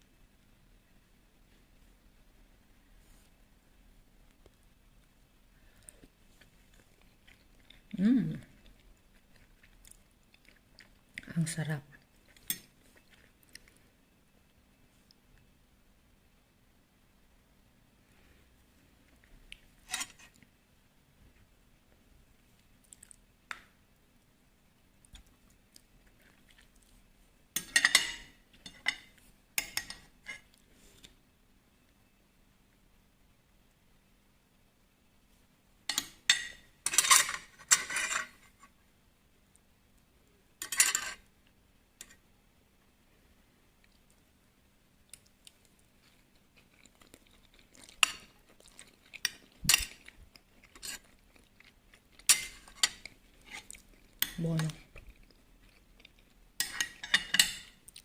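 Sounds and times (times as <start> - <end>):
cutlery clinking on a plate: 27.6 - 30.4, 35.9 - 38.3, 40.6 - 41.2, 52.2 - 53.1, 56.6 - 57.8.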